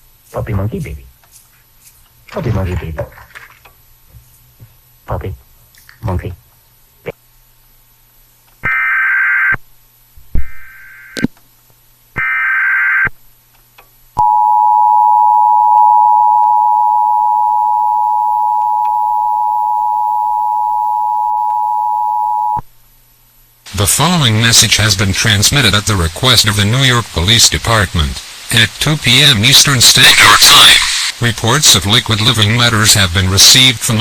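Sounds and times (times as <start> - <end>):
two-tone attention signal: 14.2 - 22.6
digital data bursts: 23.8 - 31.6.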